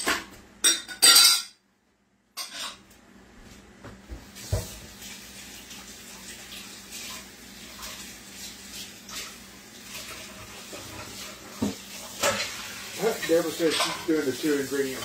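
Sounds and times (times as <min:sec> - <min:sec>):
dishes clinking: 0:00.0 - 0:01.6, 0:02.4 - 0:02.8, 0:11.6 - 0:14.4
tap water running: 0:04.1 - 0:15.0.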